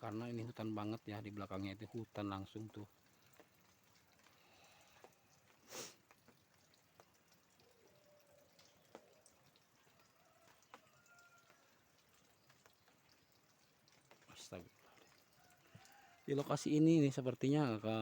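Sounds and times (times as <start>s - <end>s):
soft ticks: 3.0s - 14.3s.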